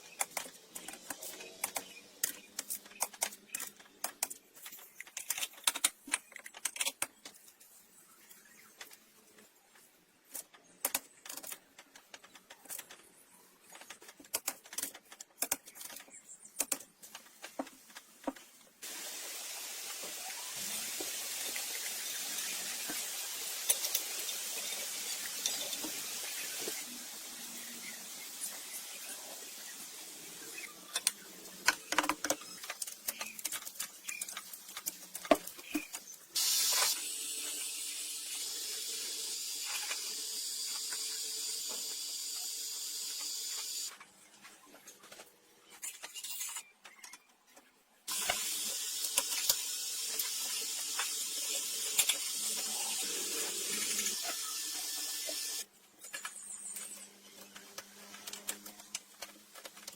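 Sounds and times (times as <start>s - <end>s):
high spraying hiss: 18.8s - 30.9s, 36.4s - 43.9s.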